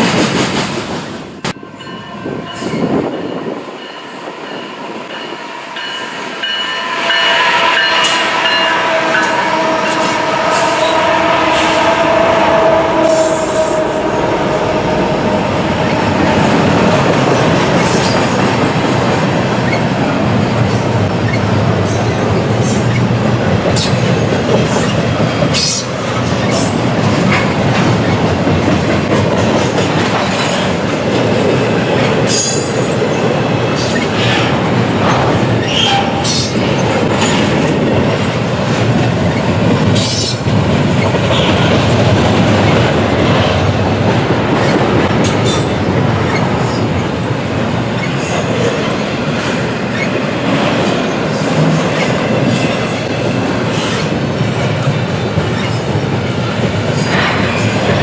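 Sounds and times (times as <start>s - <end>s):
railroad cars rumbling past: 0.0s - 58.0s
wheels squeaking and clanking: 21.2s - 23.1s, 24.7s - 26.8s, 35.1s - 37.5s, 44.6s - 46.9s, 47.9s - 48.9s, 49.8s - 52.8s, 55.4s - 56.0s.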